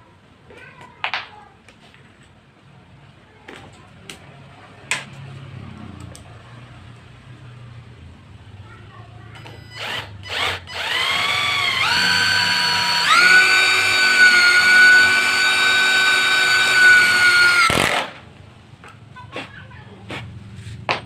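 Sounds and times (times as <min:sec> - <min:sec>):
impact drill motor whine: 0:09.4 - 0:18.0.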